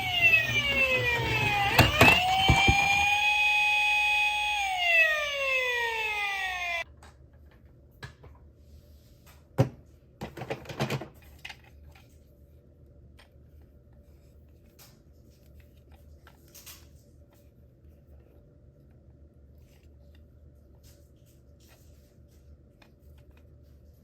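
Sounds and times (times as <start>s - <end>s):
toy electronic siren: 0.0s - 6.8s.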